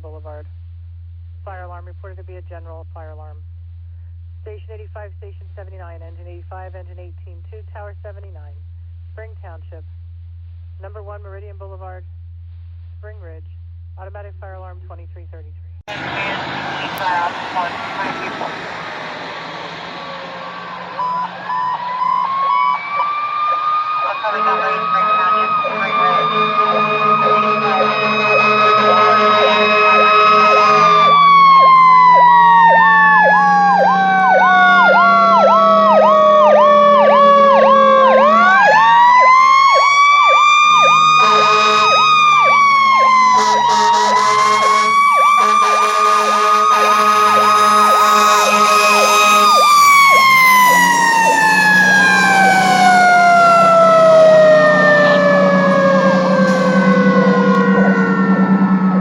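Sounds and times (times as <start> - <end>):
low steady drone: 0.0 - 37.0, 46.9 - 59.0
electronic siren yelping: 15.9 - 59.0.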